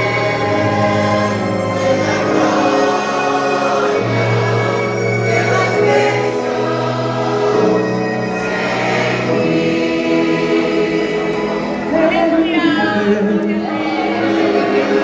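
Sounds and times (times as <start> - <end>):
vocal group singing in harmony: 0.0 - 15.0.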